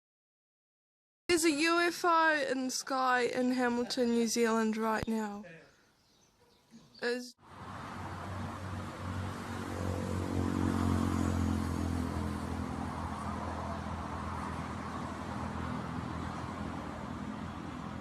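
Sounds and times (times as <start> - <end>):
vehicle engine droning: 7.4 - 18.0.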